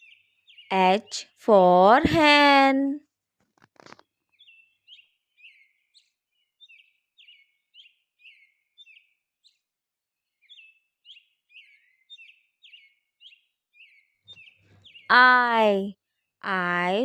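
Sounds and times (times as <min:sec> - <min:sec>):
high bird chirps: 0:10.4 - 0:15.8.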